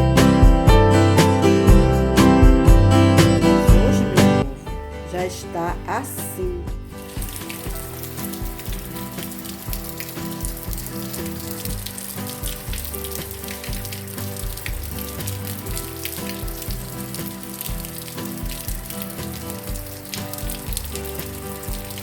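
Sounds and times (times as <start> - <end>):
music with steady beat: 0.0 - 22.0
heavy rain pattering: 7.1 - 22.0.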